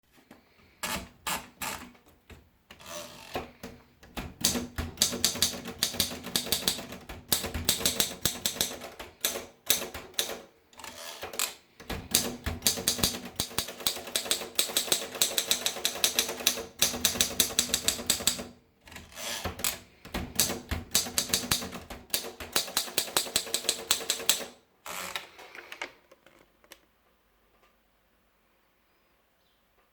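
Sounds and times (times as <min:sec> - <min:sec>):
typewriter key strikes: 0:04.1 - 0:10.4, 0:11.2 - 0:18.5, 0:19.4 - 0:24.5.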